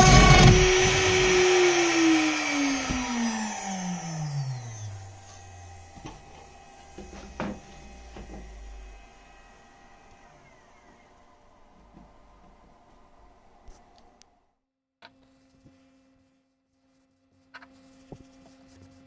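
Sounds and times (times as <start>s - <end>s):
router spindle whine winding down: 0.0s - 13.5s.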